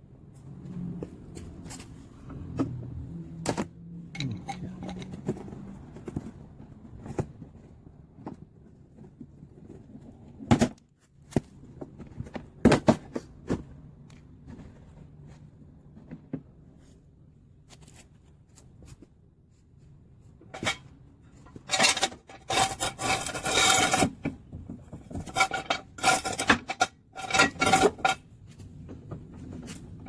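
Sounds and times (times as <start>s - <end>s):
tools and metal parts clanking: 3.4s - 6.3s, 20.4s - 28.2s.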